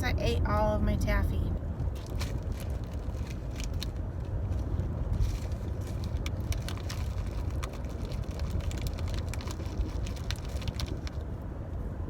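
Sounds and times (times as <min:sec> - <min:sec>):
car road rumble: 0:00.0 - 0:12.0
candy wrapper crinkling: 0:02.0 - 0:11.2.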